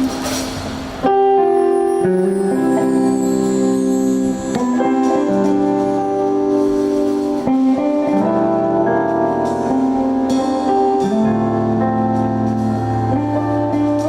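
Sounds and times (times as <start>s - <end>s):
sustained instrumental chords: 0.0s - 14.0s.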